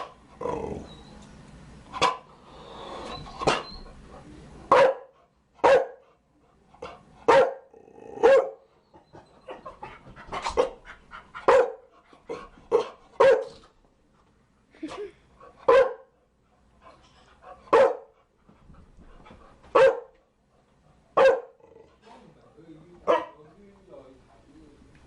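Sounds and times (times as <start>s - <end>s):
dog barking: 2.0s - 2.3s, 4.7s - 6.0s, 7.3s - 8.6s, 11.5s - 11.9s, 12.8s - 13.6s, 15.7s - 16.1s, 17.7s - 18.1s, 19.7s - 20.2s, 21.2s - 21.6s, 23.0s - 23.4s.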